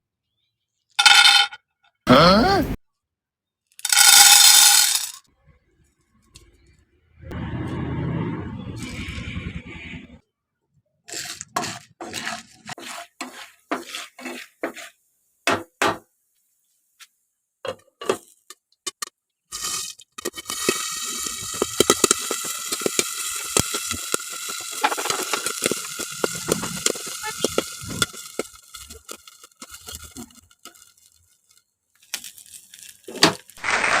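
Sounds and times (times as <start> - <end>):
popcorn kernels popping: 18.1 - 34.0
steady hiss: 19.6 - 31.2
pan clattering and knocking: 20.2 - 28.6.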